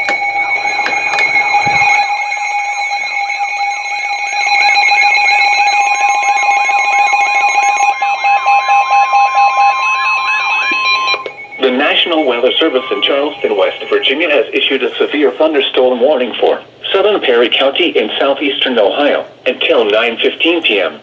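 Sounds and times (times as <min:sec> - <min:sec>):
rapid pulsed alarm beeps: 0:00.0 - 0:15.2
warbling siren: 0:00.0 - 0:15.6
steady beeping alarm tones: 0:00.0 - 0:15.8
steady warning tone: 0:00.0 - 0:19.8.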